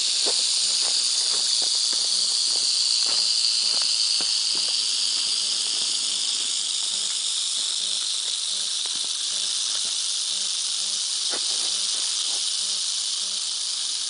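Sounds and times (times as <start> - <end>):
rattlesnake rattle buzzing: 0.0 - 14.0.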